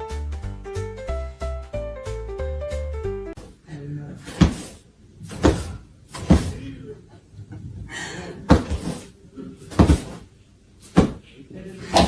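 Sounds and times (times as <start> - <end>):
sharp thumps: 4.3 - 6.7, 9.7 - 10.2.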